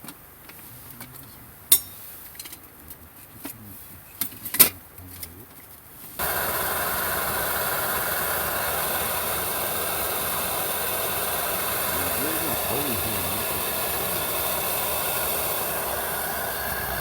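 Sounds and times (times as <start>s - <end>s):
camp stove burner roaring hiss: 6.0s - 17.0s.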